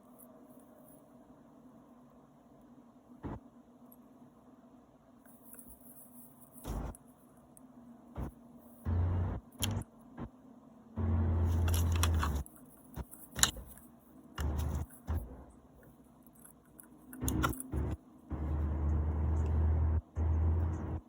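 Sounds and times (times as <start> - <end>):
metallic clicks and rattles: 11.4 - 15.3, 16.3 - 18.0.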